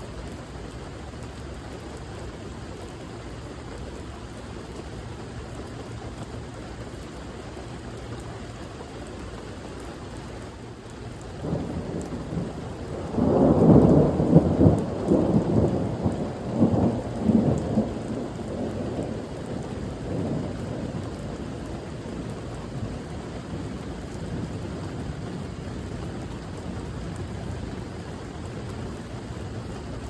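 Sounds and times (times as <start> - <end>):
steady rain: 0.0 - 30.0
thunder rumbling: 11.4 - 30.0.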